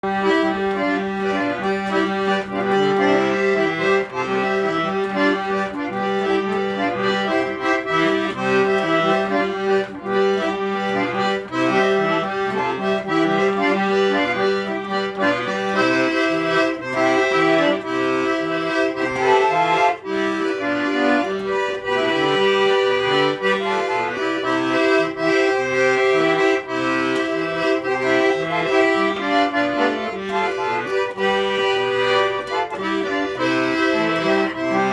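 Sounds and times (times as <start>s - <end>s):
accordion playing a tune: 0.0s - 34.9s.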